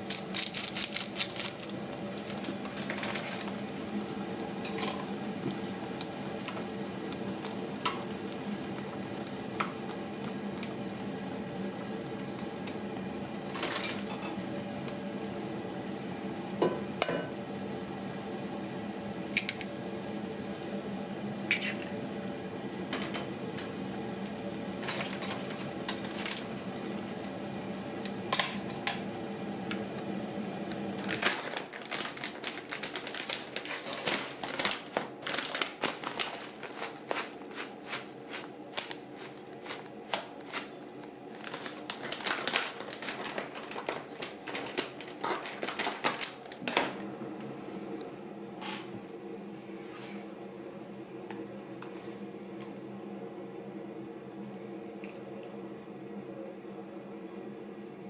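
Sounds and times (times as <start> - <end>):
kitchen appliance humming: 0.0 - 58.0.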